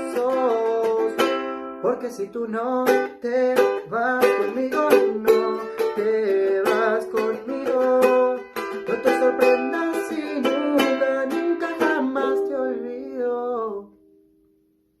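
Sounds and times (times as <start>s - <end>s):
person singing: 0.0s - 14.0s
ukulele strumming: 0.0s - 14.5s.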